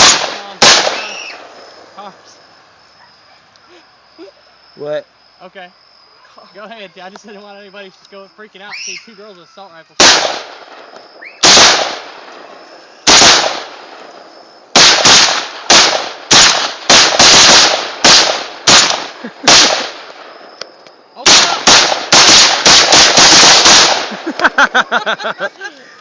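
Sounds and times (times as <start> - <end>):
rifle shots with echo: 0.0 - 1.6, 10.0 - 12.4, 13.0 - 14.1, 14.7 - 20.3, 21.2 - 24.2.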